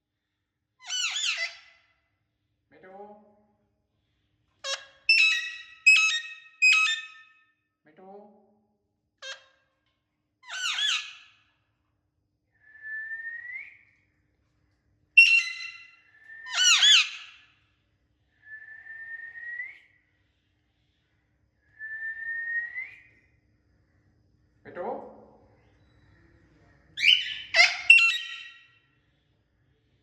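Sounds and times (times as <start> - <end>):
parakeet squawks: 0.8 - 1.7, 4.6 - 7.2, 10.5 - 11.3, 15.2 - 15.9, 16.5 - 17.4, 27.0 - 28.7
parakeet whistles: 5.1 - 7.2, 15.2 - 17.4, 27.0 - 28.6.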